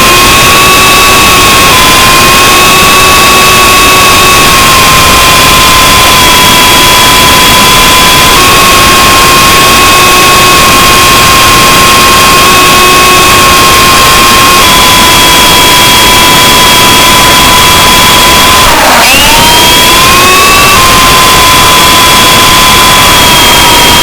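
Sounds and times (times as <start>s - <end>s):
rc helicopter motor whine: 0.0s - 24.0s
rotor rushing noise: 15.9s - 23.7s.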